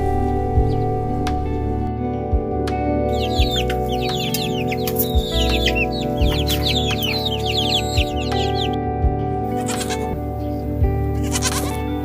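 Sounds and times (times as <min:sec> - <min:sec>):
background music: 0:00.0 - 0:12.0
farm animal bleating: 0:09.4 - 0:10.2, 0:11.0 - 0:12.0.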